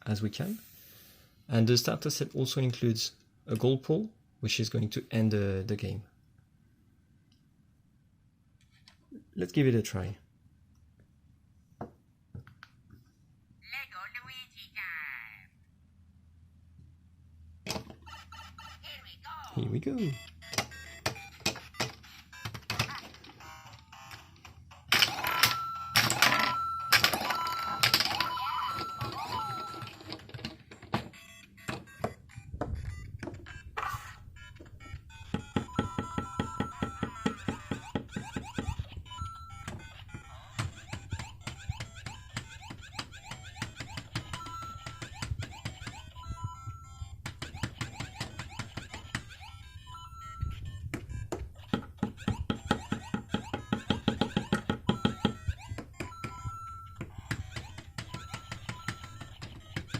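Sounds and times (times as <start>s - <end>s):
toy speaker beeps: 18.0s - 30.3s, 31.0s - 59.9s
held electronic tone: 25.2s - 30.1s, 44.2s - 51.4s, 52.6s - 59.6s
electronic game music: 31.0s - 42.9s
plastic taps and knocks: 50.9s - 59.9s.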